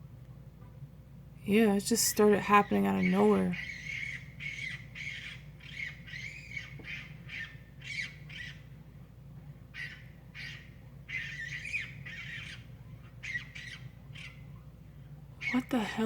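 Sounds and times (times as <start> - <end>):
animal squawking calls: 3.0 - 8.6, 9.7 - 14.4.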